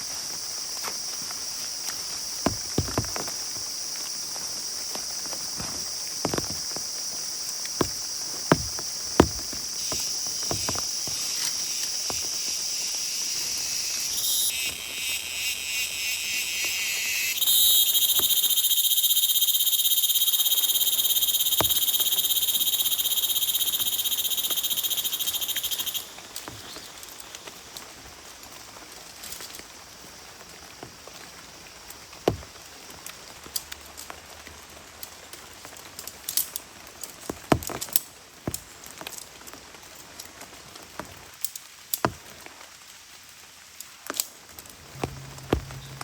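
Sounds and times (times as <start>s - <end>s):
frogs and insects trilling: 0.0s - 28.9s
sharp knocks: 2.5s - 3.2s, 7.8s - 11.2s, 45.0s - 46.0s.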